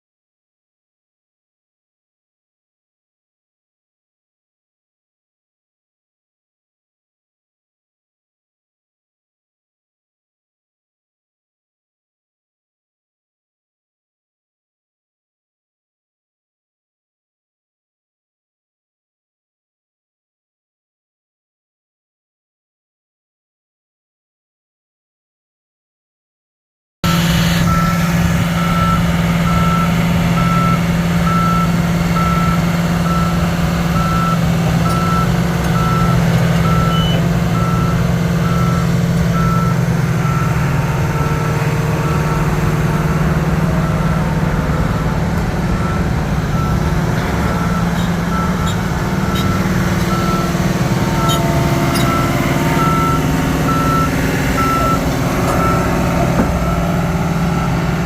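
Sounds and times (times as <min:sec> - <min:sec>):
bulldozer diesel engine running: 0:27.0 - 0:58.0
backup alarm beeping: 0:27.1 - 0:58.0.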